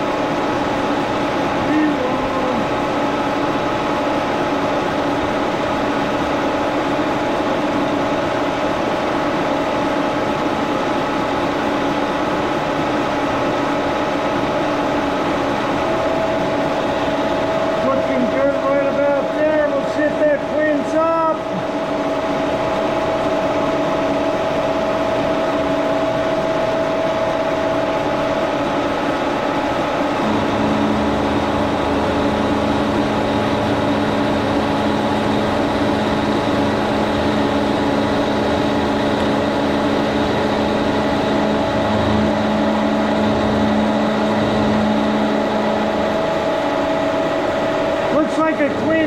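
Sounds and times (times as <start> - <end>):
milling machine whine: 0.0 - 49.0
lower steady tone: 30.2 - 47.6.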